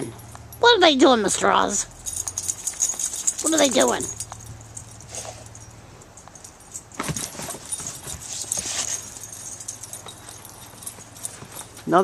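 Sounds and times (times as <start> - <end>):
dogs scuffling in snow: 7.2 - 9.6.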